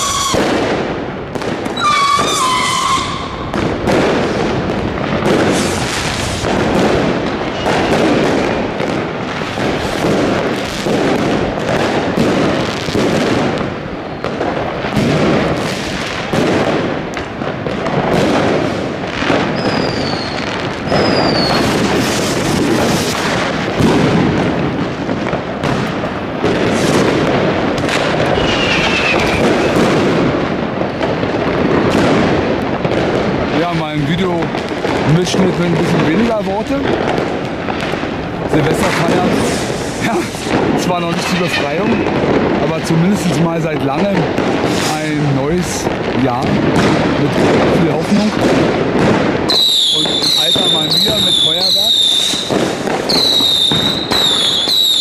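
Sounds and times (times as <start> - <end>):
firework falling whistles: 0.0 - 0.8, 1.6 - 4.4, 5.3 - 6.6, 19.4 - 23.3, 27.9 - 30.0, 49.5 - 55.0
fireworks bangs and crackle: 0.0 - 55.0.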